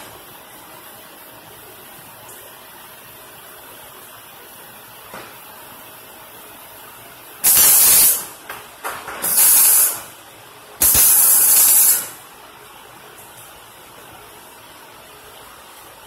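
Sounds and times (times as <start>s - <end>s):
welder arc hissing sizzle: 7.4s - 8.4s, 9.2s - 10.1s, 10.8s - 12.2s.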